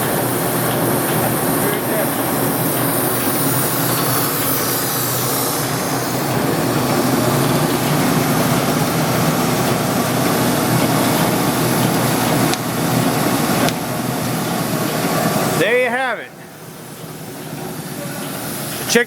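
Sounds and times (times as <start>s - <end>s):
belt sander sanding steel: 0.0s - 15.8s.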